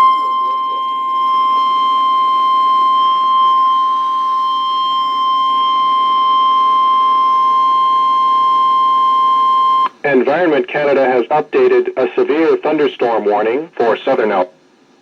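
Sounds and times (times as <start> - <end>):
high-pitched alarm tone: 0.0 - 9.9.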